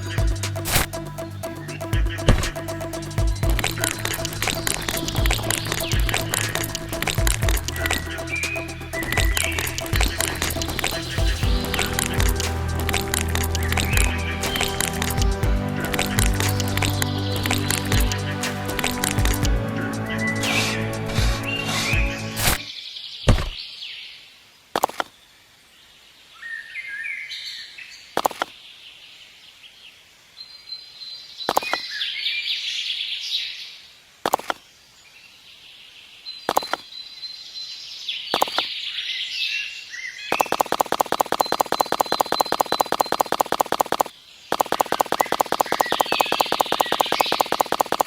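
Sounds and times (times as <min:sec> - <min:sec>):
small birds chirping: 0:00.0 - 0:12.4, 0:34.4 - 0:48.0
fast even ticking: 0:00.0 - 0:22.6, 0:40.5 - 0:48.0.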